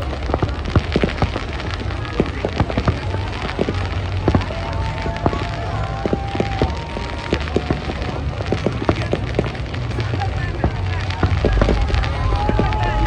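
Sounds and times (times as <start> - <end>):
fireworks popping and crackling: 0.0 - 13.0
low rumble: 0.0 - 13.0.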